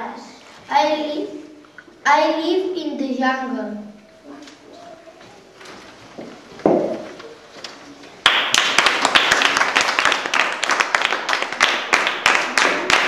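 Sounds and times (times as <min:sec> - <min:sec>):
people clapping: 0:07.6 - 0:13.0.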